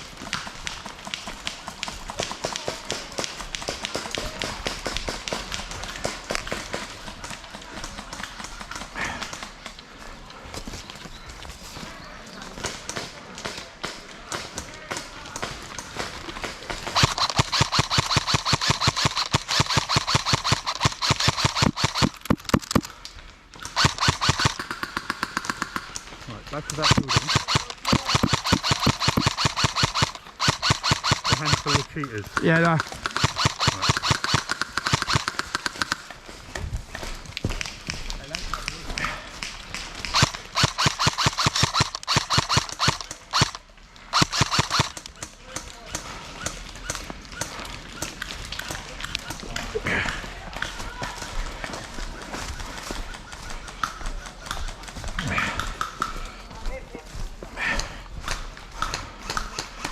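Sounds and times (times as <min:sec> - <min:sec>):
airsoft rifle firing full-auto: 0:16.7 - 0:22.9, 0:23.6 - 0:26.0, 0:26.7 - 0:36.0, 0:40.0 - 0:45.3.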